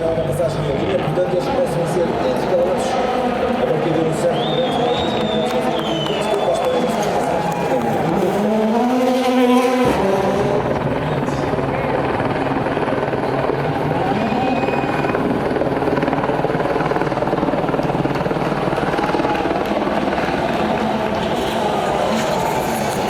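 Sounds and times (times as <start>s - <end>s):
steady mechanical drone: 0.0s - 23.0s
engine revving: 6.6s - 15.4s, 16.1s - 23.0s.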